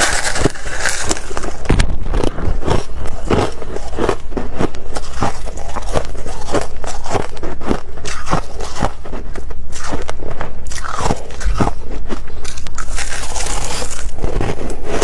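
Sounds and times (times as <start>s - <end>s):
crunchy chewing: 0.0s - 15.0s.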